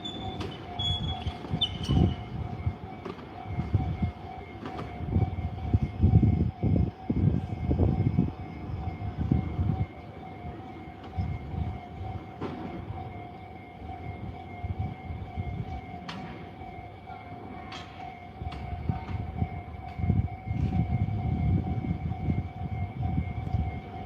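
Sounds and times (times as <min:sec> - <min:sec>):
crossing warning alarm tone: 0:00.0 - 0:24.0
train wheels rumbling and clattering: 0:00.0 - 0:24.0.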